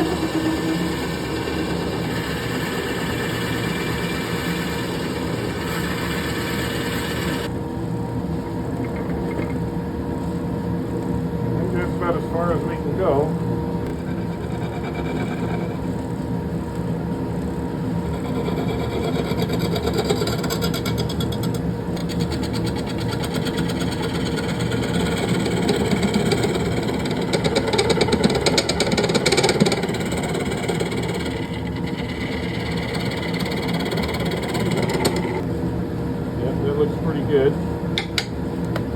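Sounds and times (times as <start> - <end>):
rough scraping on lathe: 0.0 - 7.5, 13.9 - 15.8, 18.0 - 35.4
wood lathe motor hum: 0.0 - 7.6, 11.6 - 15.9, 17.8 - 35.5.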